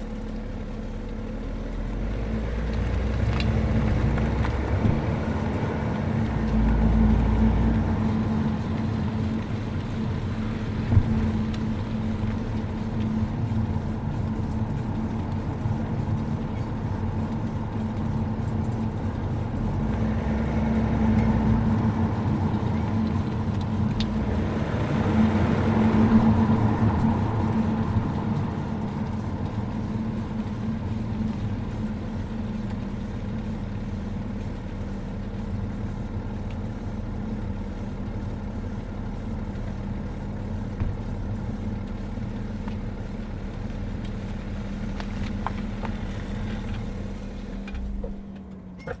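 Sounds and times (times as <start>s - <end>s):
road and tyre rumble: 0.0s - 49.0s
steady low hum: 2.4s - 34.2s.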